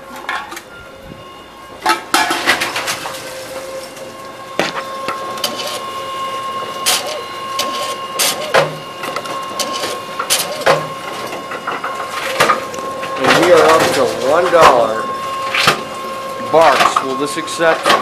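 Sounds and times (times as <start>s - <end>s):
vending machine humming: 0.0s - 18.0s.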